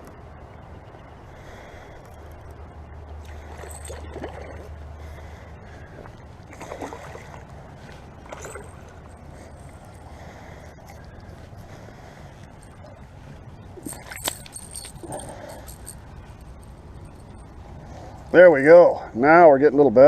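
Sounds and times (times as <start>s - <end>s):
fish splashing in water: 6.1s - 11.2s.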